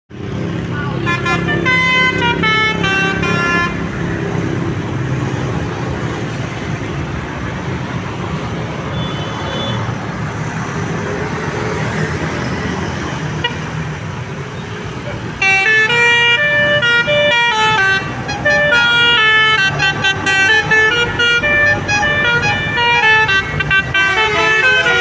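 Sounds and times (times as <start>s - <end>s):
bus engine rumble: 0.1s - 25.0s
road traffic: 0.1s - 25.0s
multi-tone bus horn melody: 0.9s - 4.7s, 13.3s - 13.7s, 15.4s - 25.0s.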